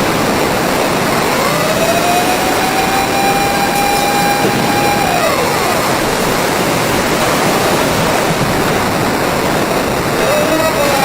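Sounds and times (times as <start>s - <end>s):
loud steady rushing noise: 0.0s - 11.0s
wailing siren: 0.4s - 7.6s, 9.6s - 11.0s.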